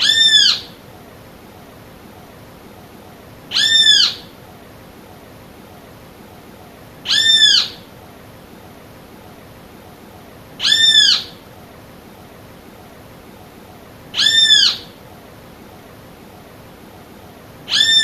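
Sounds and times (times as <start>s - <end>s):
bird calling: 0.0s - 0.8s, 3.5s - 4.4s, 7.0s - 7.9s, 10.6s - 11.4s, 14.1s - 15.0s, 17.6s - 18.0s.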